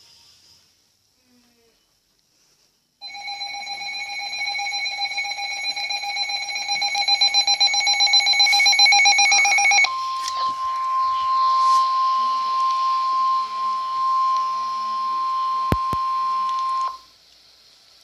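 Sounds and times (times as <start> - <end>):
pulsing electronic alarm tones: 3.0 - 17.0
steady attention tone: 3.0 - 17.1.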